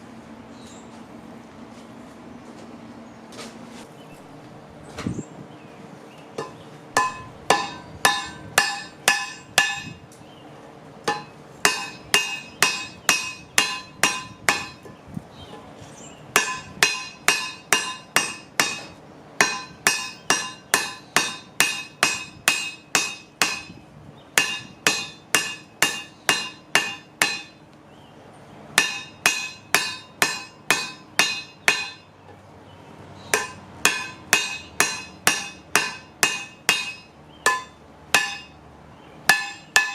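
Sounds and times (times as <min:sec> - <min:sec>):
hammer striking metal anvil: 0:06.4 - 0:10.0, 0:11.1 - 0:15.0, 0:16.4 - 0:23.8, 0:24.4 - 0:27.6, 0:28.8 - 0:32.1, 0:33.3 - 0:38.6, 0:39.3 - 0:39.9.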